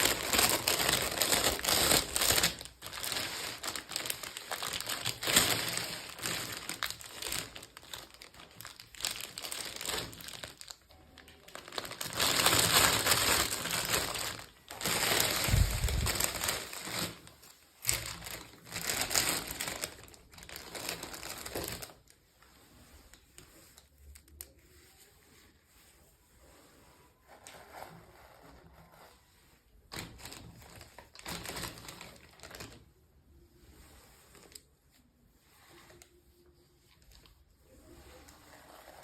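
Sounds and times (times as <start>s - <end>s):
packaging crinkling: 0.0s - 22.1s, 29.9s - 32.8s.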